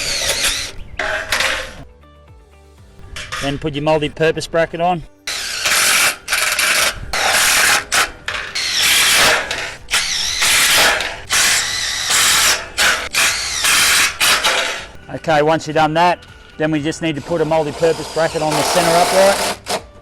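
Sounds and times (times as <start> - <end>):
cordless drill driving screws: 0.0 - 1.8, 5.3 - 15.0, 16.2 - 20.0.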